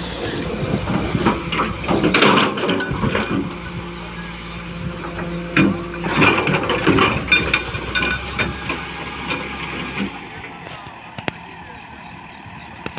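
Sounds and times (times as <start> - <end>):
excavator engine running: 0.0 - 12.9
sharp knocks and clanks: 0.7 - 3.9, 4.8 - 11.4.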